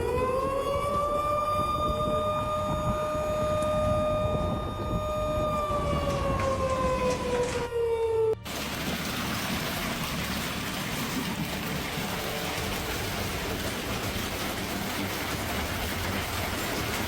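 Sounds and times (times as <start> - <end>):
rain pouring: 8.4 - 17.0.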